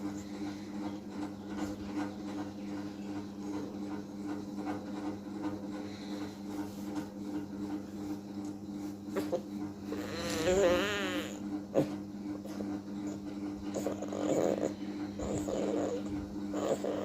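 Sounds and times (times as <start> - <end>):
steady low hum: 0.0 - 17.0
puppy snoring softly: 9.1 - 17.0.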